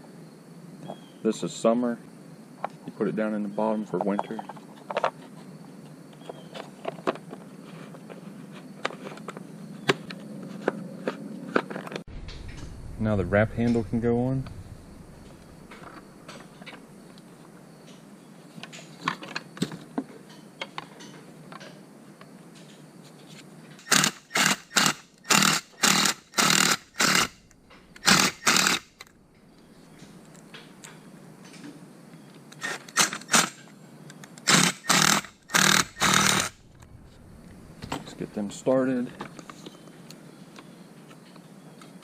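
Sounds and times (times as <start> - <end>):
small power tool bursts: 23.8 - 29.1, 32.6 - 33.6, 34.4 - 36.7.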